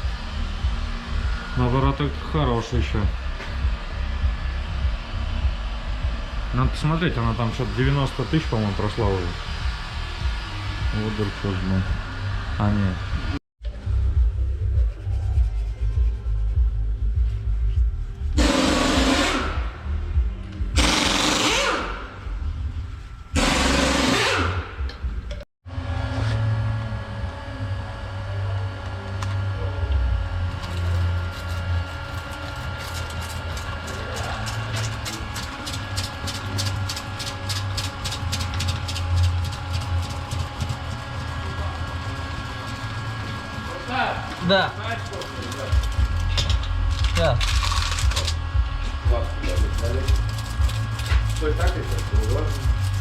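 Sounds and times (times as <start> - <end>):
steady low rumble: 0.0 - 21.0, 21.9 - 23.7, 26.7 - 53.0
machine humming: 0.0 - 53.0
pneumatic impact wrench: 18.4 - 19.6, 20.8 - 22.1, 23.4 - 25.0
fast regular ticking: 49.1 - 53.0.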